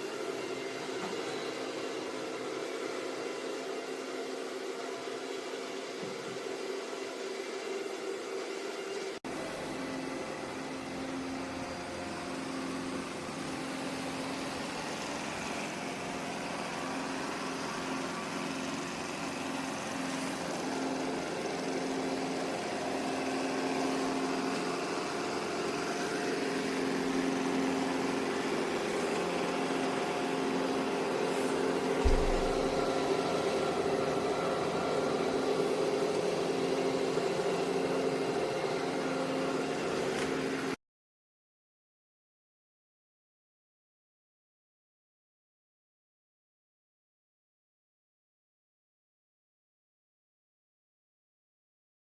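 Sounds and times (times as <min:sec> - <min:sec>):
robot vacuum cleaner hum: 0:00.0 - 0:40.8
low thump: 0:32.0 - 0:32.9.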